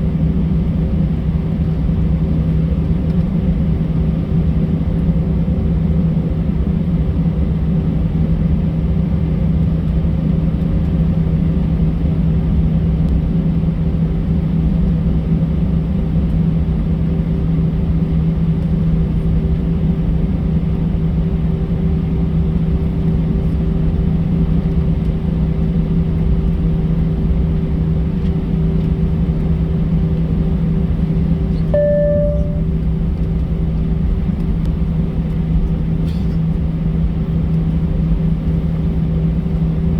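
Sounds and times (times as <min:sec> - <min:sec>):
aircraft cabin engine drone: 0:00.0 - 0:39.9
short single tone: 0:31.8 - 0:32.8.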